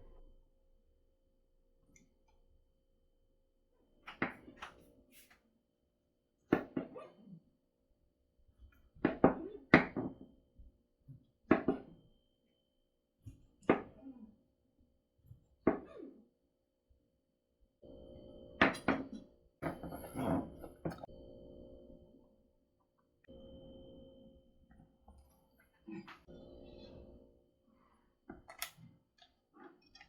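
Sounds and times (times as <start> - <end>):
faint steady hum: 17.8 - 22.7, 23.3 - 28.7.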